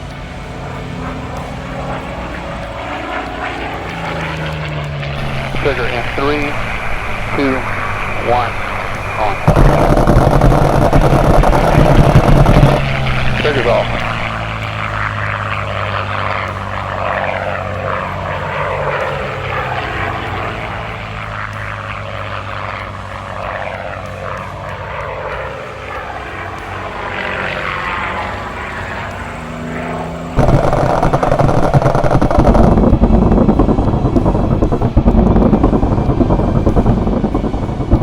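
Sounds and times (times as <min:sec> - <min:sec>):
piston engine and propeller: 0:00.0 - 0:38.0
loud rapid rattling: 0:05.2 - 0:14.5, 0:30.4 - 0:38.0.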